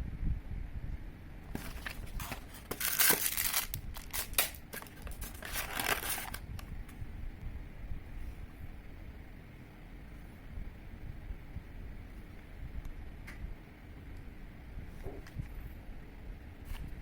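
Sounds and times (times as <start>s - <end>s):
material crinkling and rustling: 1.5s - 6.5s.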